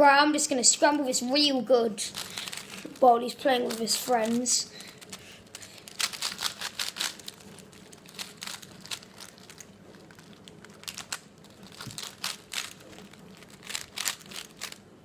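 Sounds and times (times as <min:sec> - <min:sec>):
puzzle cube clicking turns: 0:03.6 - 0:07.4, 0:10.6 - 0:14.8.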